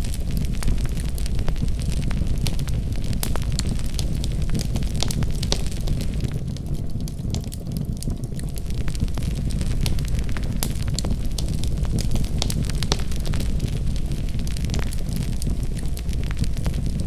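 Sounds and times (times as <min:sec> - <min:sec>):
low rumble of flames: 0:00.0 - 0:17.0
wood fire crackling and popping: 0:00.0 - 0:17.0.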